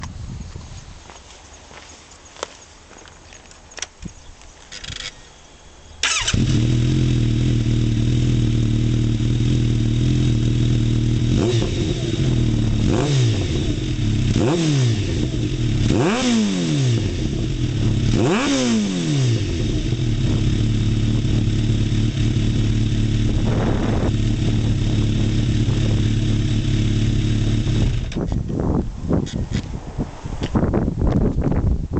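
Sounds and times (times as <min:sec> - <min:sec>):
motorcycle engine idling and revving: 0:06.0 - 0:29.8.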